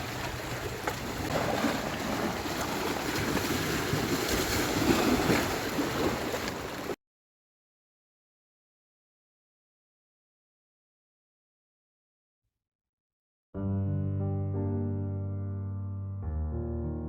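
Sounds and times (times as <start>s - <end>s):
sea waves washing on shore: 0.0s - 7.0s.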